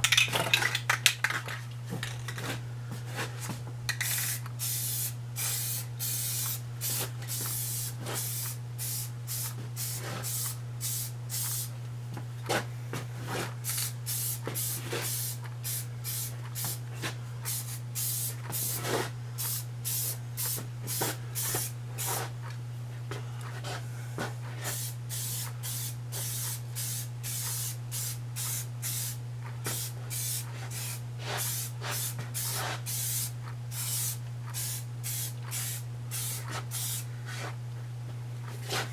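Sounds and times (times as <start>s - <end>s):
steady low hum: 0.0s - 38.9s
spray can hissing bursts: 3.9s - 11.7s, 13.6s - 16.8s, 17.5s - 22.2s, 24.7s - 37.1s.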